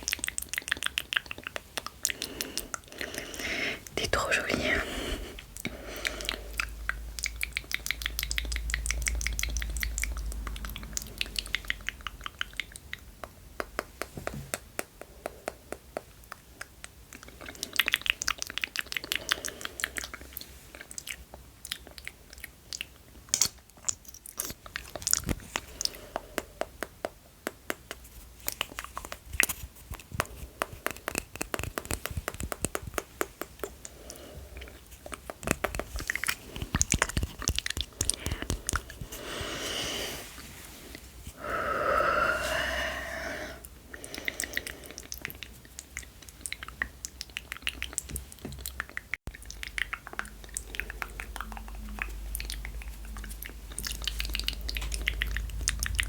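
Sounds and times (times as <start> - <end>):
tongue clicks: 0.0 - 4.5, 5.5 - 39.1, 43.6 - 56.0
lip smacks: 0.0 - 56.0
mouth sucking sounds: 33.4 - 46.6.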